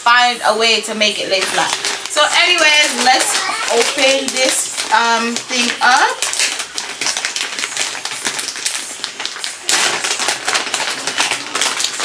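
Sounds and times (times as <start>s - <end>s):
packaging wrapping crinkling: 0.6s - 12.0s.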